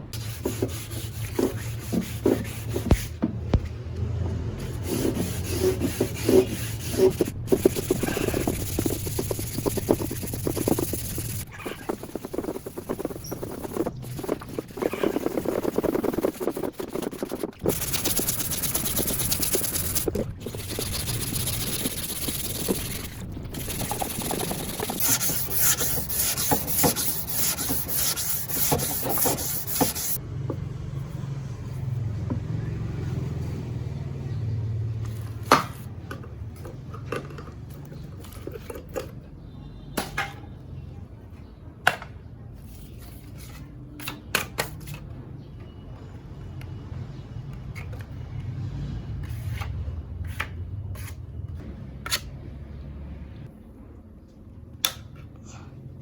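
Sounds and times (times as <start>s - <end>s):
abrasive rubbing and scraping: 4.6s - 30.2s.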